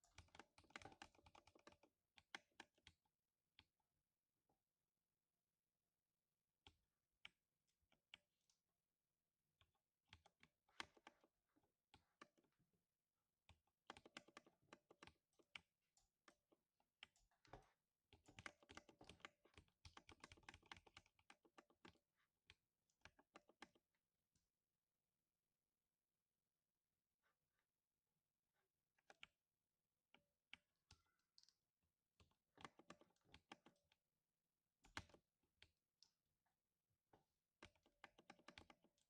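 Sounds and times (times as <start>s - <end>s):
mechanical keyboard typing: 17.6s - 21.9s.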